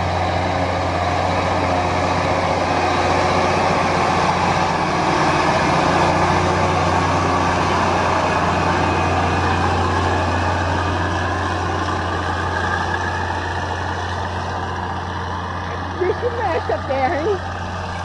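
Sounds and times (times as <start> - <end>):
heavy machine engine humming: 0.0 - 18.0.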